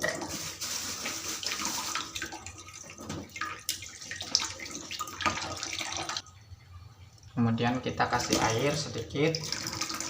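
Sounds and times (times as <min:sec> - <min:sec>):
water splashing and sloshing: 0:00.0 - 0:06.3.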